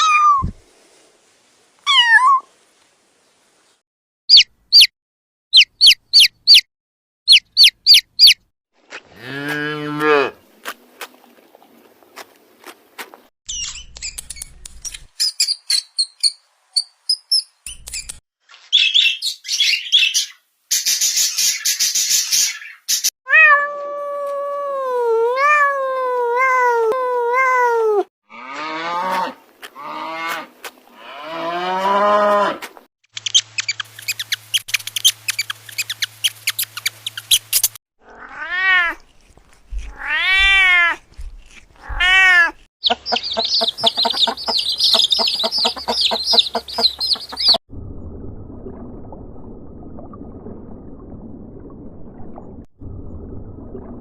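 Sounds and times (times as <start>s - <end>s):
cats meowing: 1.9s - 2.4s, 23.3s - 28.1s, 38.1s - 47.6s
high chirps: 4.3s - 4.9s, 5.5s - 6.7s, 7.3s - 8.4s, 33.2s - 37.7s, 42.8s - 47.6s.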